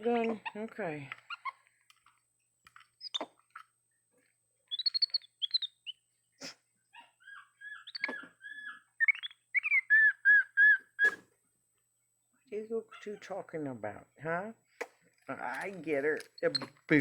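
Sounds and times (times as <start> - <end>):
monkey chirping: 1.3 - 1.6, 3.0 - 3.6, 4.7 - 11.3, 12.5 - 13.4, 15.9 - 16.8.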